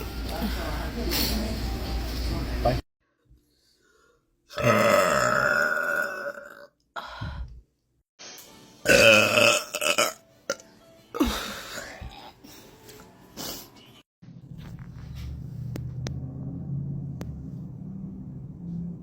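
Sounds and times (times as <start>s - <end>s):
person burping: 4.5s - 6.7s, 8.8s - 10.6s, 11.2s - 12.4s.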